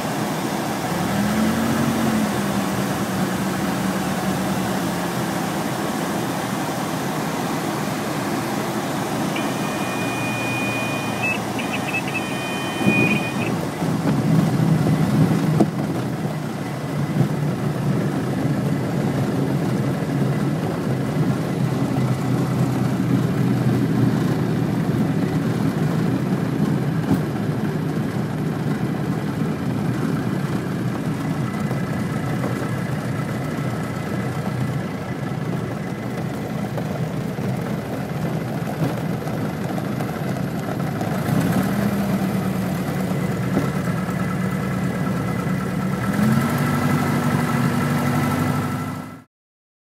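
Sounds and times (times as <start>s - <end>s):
light aircraft engine running: 0.0s - 49.3s
high-pitched electronic tone: 9.3s - 13.6s.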